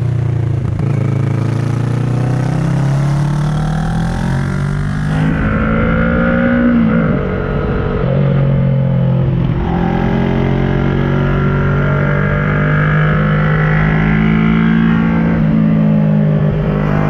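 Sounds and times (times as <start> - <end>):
motorcycle engine: 0.0 - 17.0.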